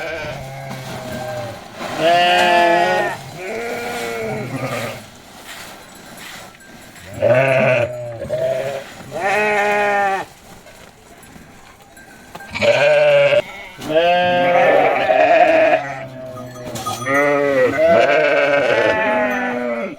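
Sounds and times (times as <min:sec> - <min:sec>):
sheep bleating: 0:00.0 - 0:05.0, 0:07.1 - 0:10.3, 0:12.5 - 0:19.9.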